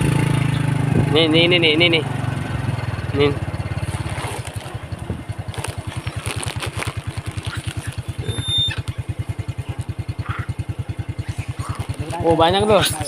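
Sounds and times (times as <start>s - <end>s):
motorcycle engine idling: 0.0s - 13.0s
brief high squeak: 8.2s - 8.9s.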